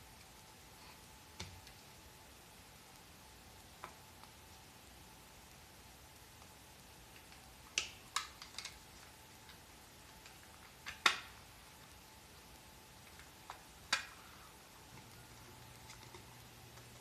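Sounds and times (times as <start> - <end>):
faint steady hum: 0.0 - 17.0
small parts clicking and tapping: 6.4 - 14.2.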